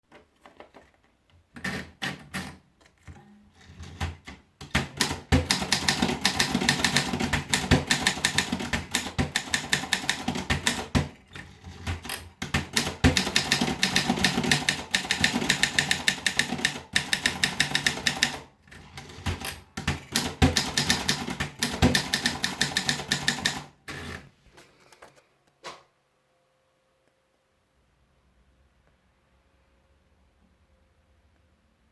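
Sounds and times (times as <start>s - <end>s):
manual typewriter key strikes: 4.0s - 11.2s, 11.8s - 24.0s.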